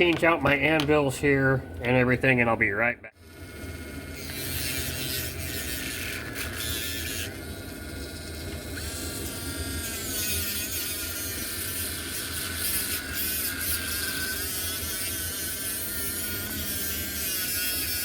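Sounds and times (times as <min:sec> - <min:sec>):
small electric motor whining: 0:03.2 - 0:18.0.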